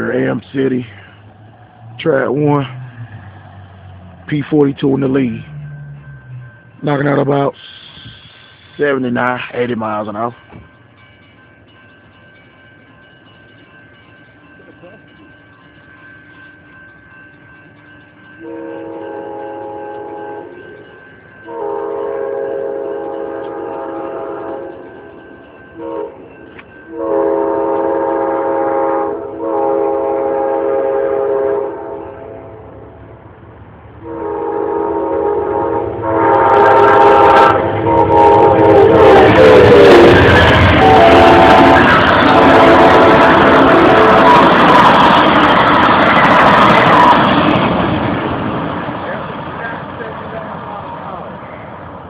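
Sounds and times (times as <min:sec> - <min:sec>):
train rushing past: 0:00.0 - 0:11.2, 0:14.7 - 0:52.0
train horn blasts: 0:18.4 - 0:25.2, 0:25.8 - 0:32.8, 0:34.0 - 0:45.4.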